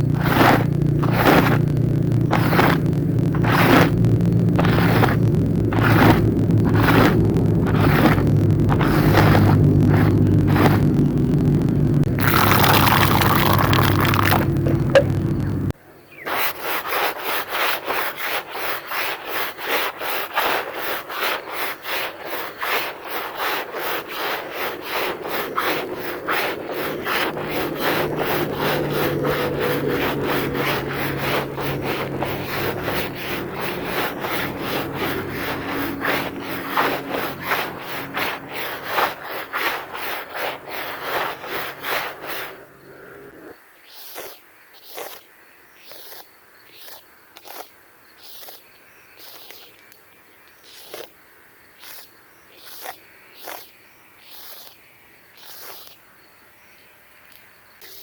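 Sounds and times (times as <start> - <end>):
carpet being scrubbed: 0.0 - 15.2, 16.3 - 42.6.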